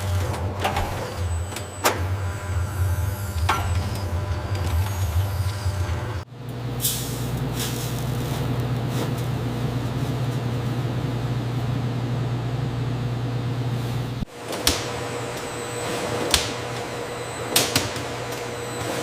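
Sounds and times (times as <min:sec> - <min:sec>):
food processing machinery humming: 0:00.0 - 0:19.0.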